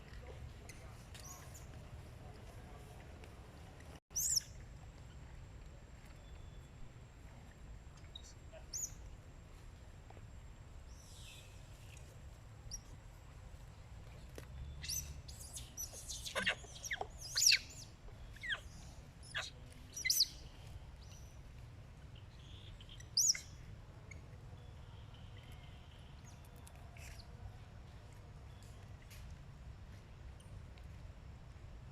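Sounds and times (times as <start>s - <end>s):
young monkey squeaking: 4.2s - 4.6s, 8.1s - 9.0s, 14.8s - 20.4s, 22.7s - 24.2s.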